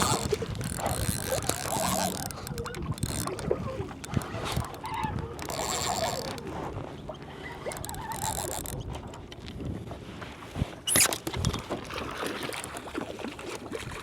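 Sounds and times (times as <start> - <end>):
fishing reel clicking: 0.0 - 6.4, 7.6 - 8.8
water sloshing against hull: 0.0 - 14.0.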